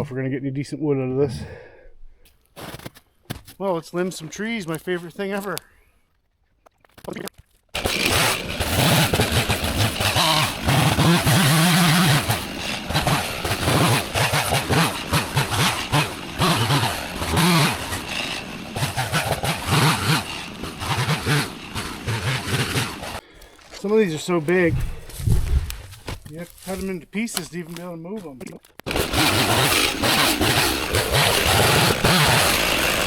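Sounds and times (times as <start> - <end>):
chainsaw cutting: 7.8 - 27.8, 28.8 - 33.0.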